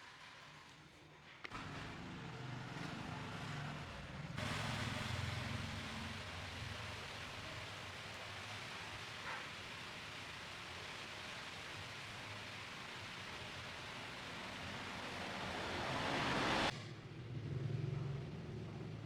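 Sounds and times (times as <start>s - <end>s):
hair dryer running: 12.3s - 16.7s.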